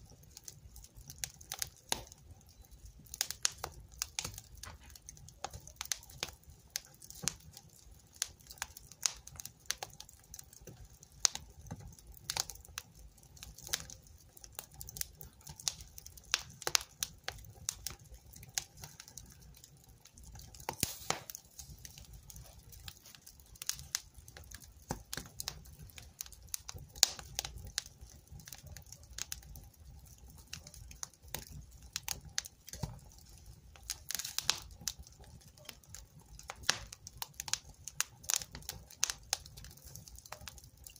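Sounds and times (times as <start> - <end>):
wood fire crackling: 0.0 - 40.9.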